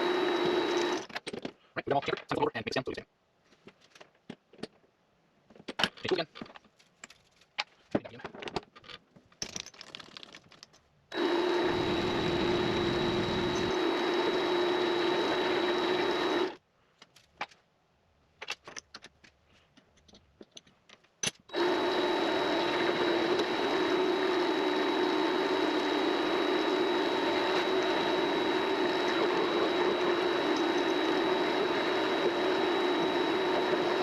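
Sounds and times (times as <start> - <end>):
lathe motor whining: 0.0 - 1.0, 11.1 - 16.6, 21.5 - 34.0.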